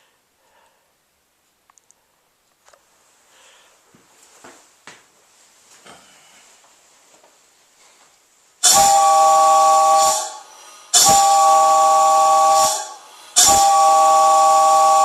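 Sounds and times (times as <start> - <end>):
multi-chime train whistle blasts: 8.6 - 15.0.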